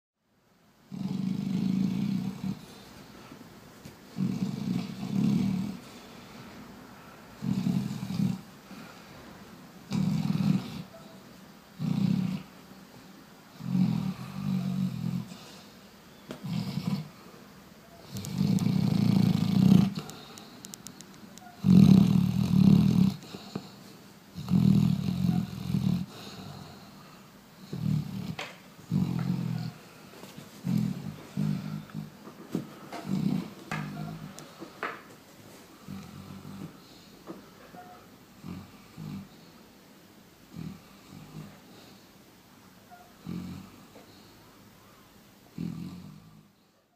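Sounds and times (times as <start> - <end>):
dog snoring: 0.9 - 2.9, 4.1 - 6.0, 7.4 - 9.0, 9.9 - 11.2, 11.8 - 12.6, 13.5 - 15.6, 16.4 - 17.3, 18.0 - 20.6, 21.4 - 30.0, 30.6 - 32.2, 32.9 - 34.4, 35.8 - 37.1, 37.8 - 39.5, 40.5 - 42.0, 43.2 - 44.3, 45.6 - 46.6
dog breathing: 21.8 - 35.0.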